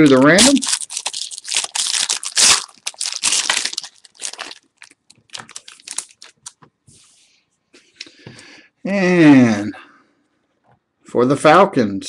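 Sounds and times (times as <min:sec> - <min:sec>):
foil wrapper tearing and crinkling: 0:00.0 - 0:06.6.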